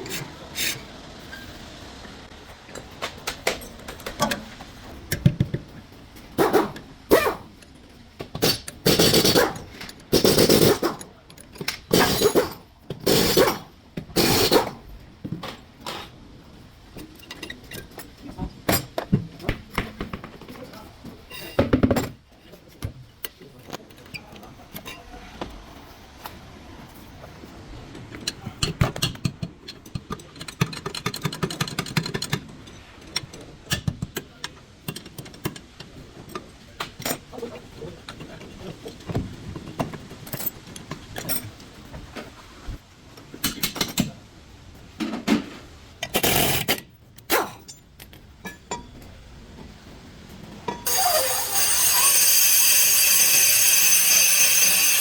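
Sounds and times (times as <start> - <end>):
metal tools clinking and knocking: 21.3 - 22.6.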